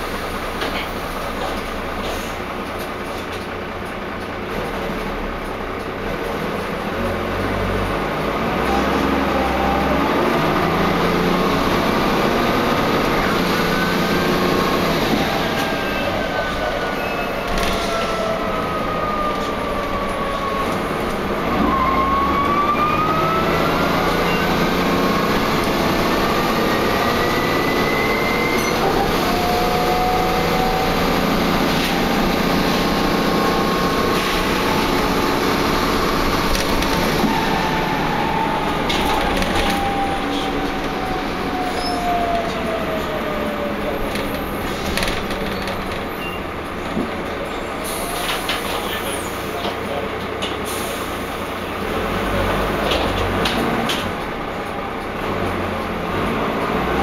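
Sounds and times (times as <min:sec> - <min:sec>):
bus engine drone: 0:00.0 - 0:57.0.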